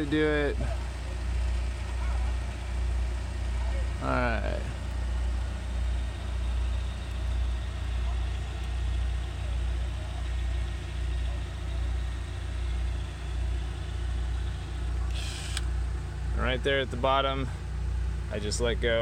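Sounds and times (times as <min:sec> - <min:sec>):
tractor engine idling: 0:00.0 - 0:19.0.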